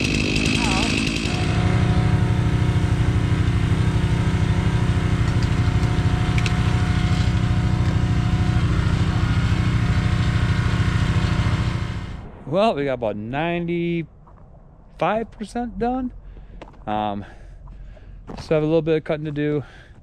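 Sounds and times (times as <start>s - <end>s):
chainsaw engine idling: 0.0s - 12.2s.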